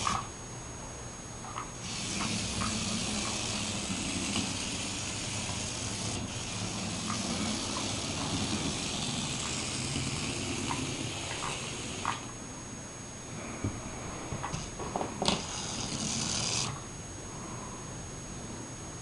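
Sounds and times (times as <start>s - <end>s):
small toy motor whirring: 1.8s - 12.3s, 14.4s - 16.9s.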